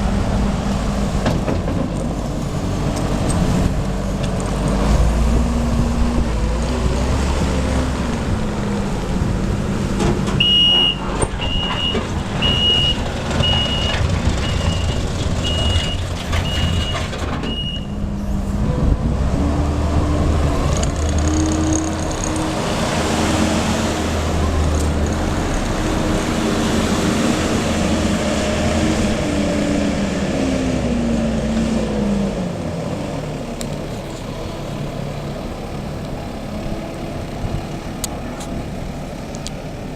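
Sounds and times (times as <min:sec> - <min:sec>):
diesel loader engine running: 0:00.0 - 0:39.9
reverse alarm beeping: 0:10.4 - 0:18.0.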